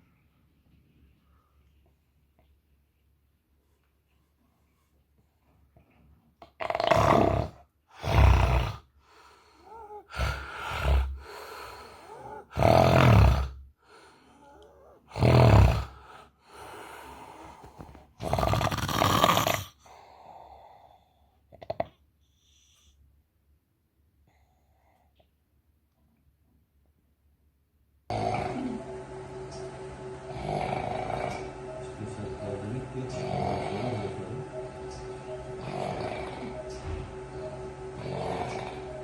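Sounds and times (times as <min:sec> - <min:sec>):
person snoring loudly: 0:06.4 - 0:21.0, 0:28.1 - 0:39.0
soft breaths: 0:07.9 - 0:21.6, 0:22.2 - 0:23.2.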